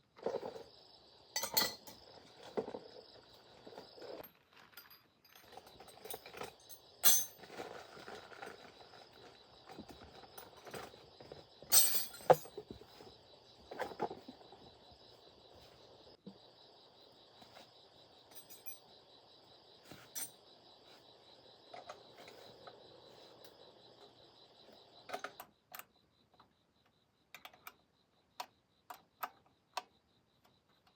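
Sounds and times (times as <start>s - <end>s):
high insect drone: 0.2s - 4.2s, 5.6s - 27.0s
metallic clinks and knocks: 1.4s - 2.8s, 4.0s - 7.8s, 11.7s - 12.9s, 18.3s - 18.9s.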